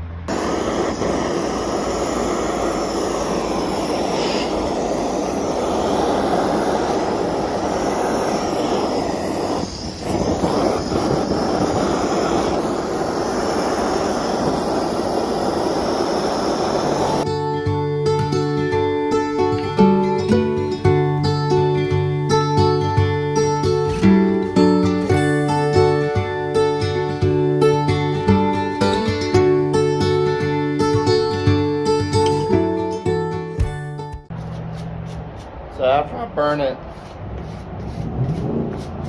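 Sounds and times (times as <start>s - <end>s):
torch flame rushing hiss: 0.3s - 17.3s, 35.3s - 38.9s
music: 17.3s - 34.4s.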